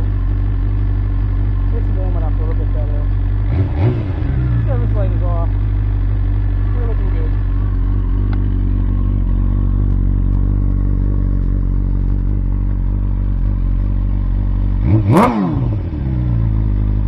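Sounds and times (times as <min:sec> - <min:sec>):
engine revving: 0:00.0 - 0:17.0
motorcycle engine idling: 0:00.0 - 0:17.0.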